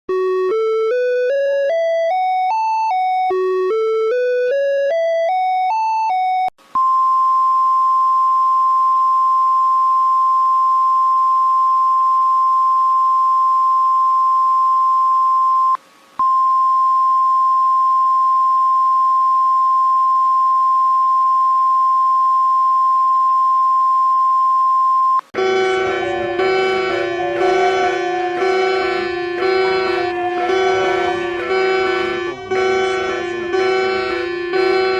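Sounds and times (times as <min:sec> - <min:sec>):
music: 0:00.1 - 0:06.5, 0:25.4 - 0:34.9
long steady high beep: 0:00.1 - 0:34.9
rising electronic beeps: 0:25.4 - 0:34.9.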